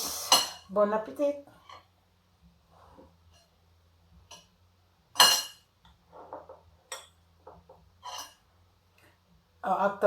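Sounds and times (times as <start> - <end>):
cutlery clinking on dish: 5.2 - 5.7, 6.4 - 8.4
soft scraping and handling: 6.0 - 6.8.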